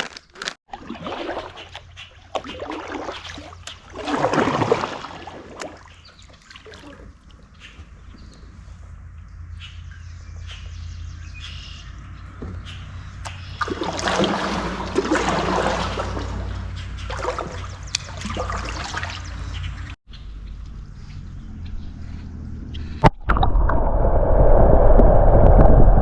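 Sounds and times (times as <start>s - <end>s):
water splashing around kayak paddle: 0.4s - 8.8s, 12.6s - 20.0s
small birds chirping: 5.5s - 15.0s, 15.7s - 23.0s.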